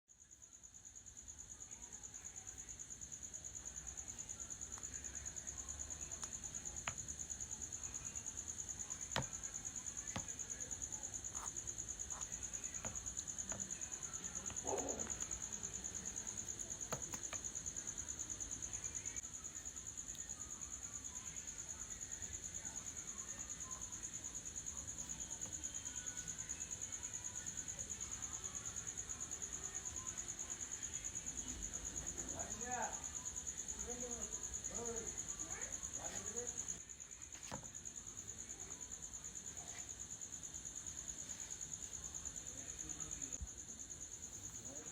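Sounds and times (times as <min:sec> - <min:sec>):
insect trilling: 0:03.7 - 0:22.3.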